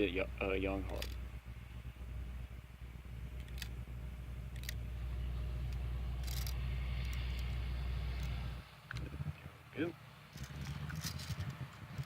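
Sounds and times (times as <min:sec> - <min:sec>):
steady low rumble: 0:00.0 - 0:12.0
grainy rattle of bbs: 0:00.7 - 0:01.3, 0:05.7 - 0:07.6, 0:10.3 - 0:12.0
rifle handling clicks: 0:04.6 - 0:04.8.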